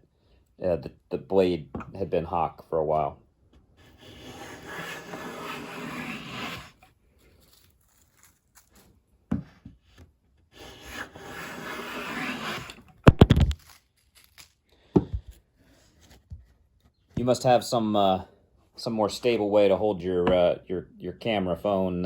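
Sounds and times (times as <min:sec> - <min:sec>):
hand plane shaving wood: 0:03.8 - 0:06.9, 0:10.5 - 0:12.9.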